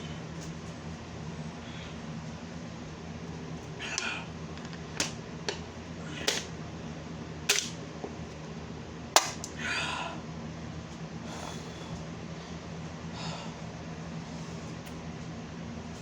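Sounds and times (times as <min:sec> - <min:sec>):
low steady hum: 0:00.0 - 0:16.0
person breathing out: 0:09.6 - 0:10.2.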